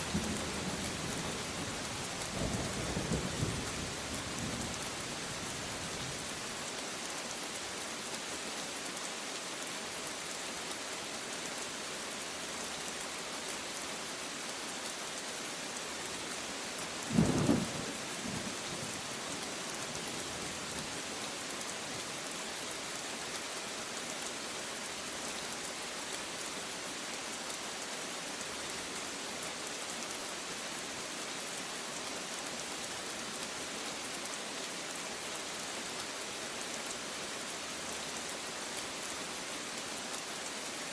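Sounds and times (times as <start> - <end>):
steady rain falling: 0.0 - 40.9.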